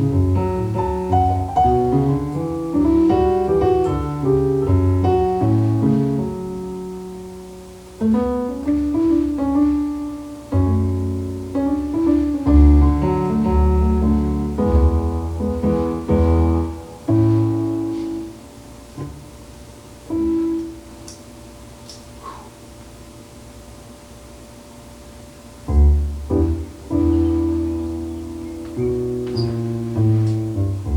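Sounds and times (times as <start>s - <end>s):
piano chords: 0.0s - 23.1s, 25.0s - 30.9s.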